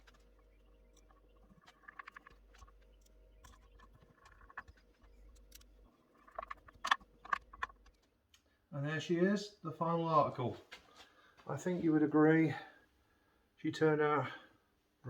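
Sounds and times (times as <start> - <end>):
faint clicks and rustling taps: 0.0 - 8.5.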